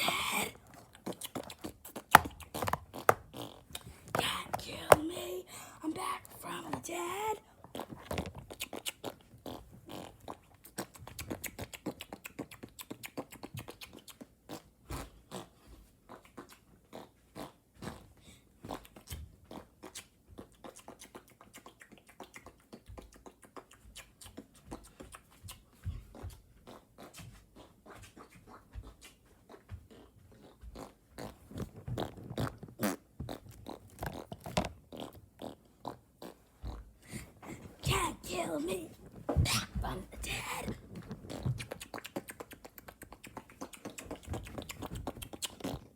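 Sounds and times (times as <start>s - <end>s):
mouth clicks and tongue pops: 0.0s - 6.8s, 8.2s - 15.5s, 18.7s - 29.1s, 39.4s - 45.9s.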